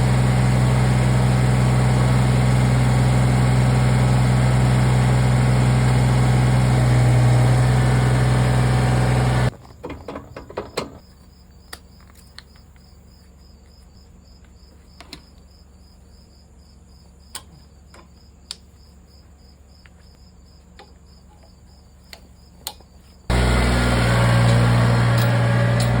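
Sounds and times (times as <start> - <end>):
diesel tractor engine idling: 0.0 - 9.5, 23.3 - 26.0.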